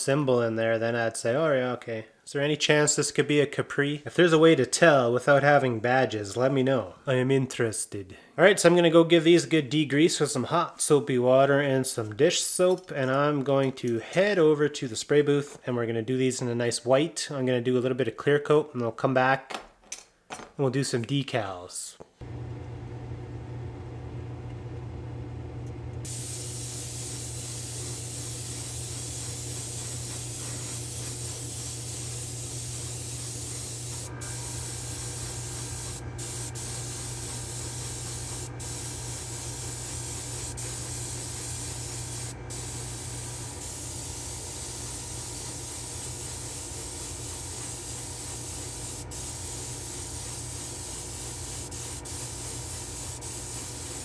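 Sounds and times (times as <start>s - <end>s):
spray paint hiss: 26.0s - 54.0s.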